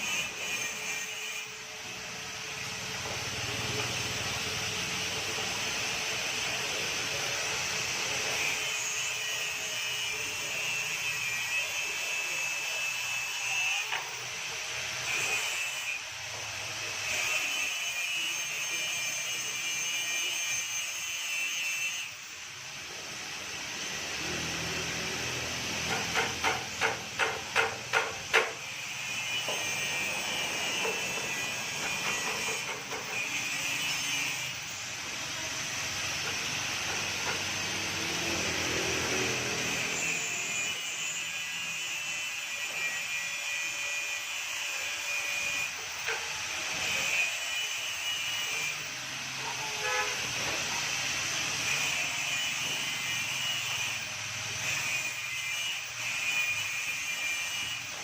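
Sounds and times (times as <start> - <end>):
knocks on metal: 25.9 - 28.6.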